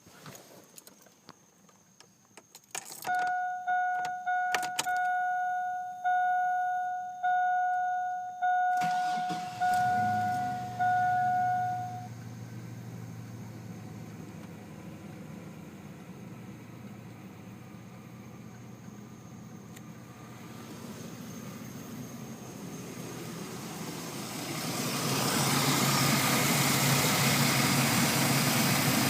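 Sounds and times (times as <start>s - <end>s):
keys clicking and jingling: 2.4s - 5.2s
dash warning chime: 3.1s - 12.1s
engine cranking and idling: 8.7s - 29.0s.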